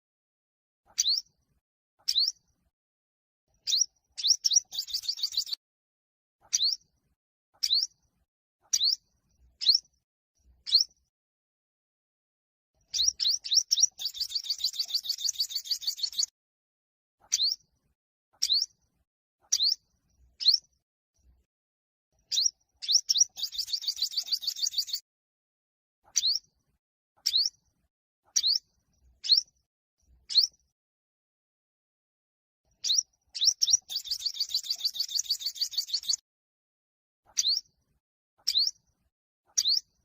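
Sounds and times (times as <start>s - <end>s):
bird trilling and singing: 1.0s - 1.3s, 2.1s - 2.4s, 3.6s - 5.6s, 6.5s - 6.8s, 7.6s - 7.9s, 8.7s - 9.0s, 9.6s - 9.8s, 10.7s - 10.9s, 12.9s - 16.3s, 17.3s - 17.6s, 18.4s - 18.7s, 19.5s - 19.8s, 20.4s - 20.6s, 22.3s - 25.0s, 26.1s - 26.4s, 27.2s - 27.6s, 28.4s - 29.5s, 30.3s - 30.6s, 32.8s - 36.2s, 37.3s - 37.7s, 38.4s - 38.8s, 39.6s - 39.9s.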